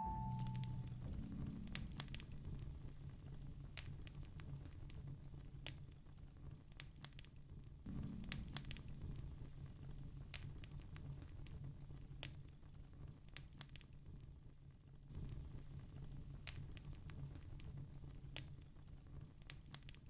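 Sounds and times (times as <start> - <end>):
wood fire crackling: 0.2 - 20.0.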